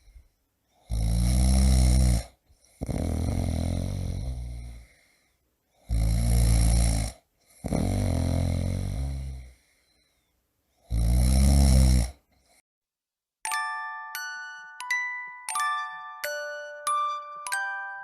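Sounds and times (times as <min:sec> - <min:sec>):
person snoring loudly: 0:00.8 - 0:05.1, 0:05.8 - 0:09.6, 0:10.8 - 0:12.3.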